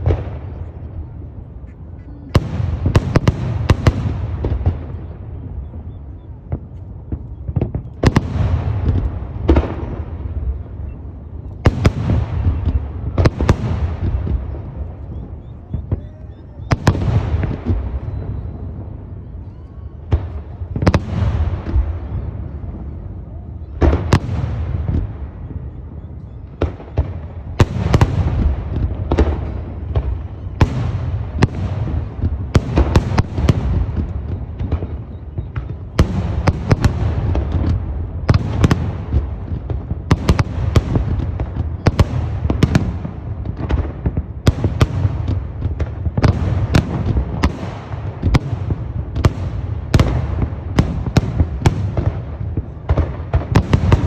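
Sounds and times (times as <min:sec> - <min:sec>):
fireworks crackle: 0:00.0 - 0:05.7, 0:26.5 - 0:54.0
fireworks bursting with bangs: 0:00.0 - 0:54.0.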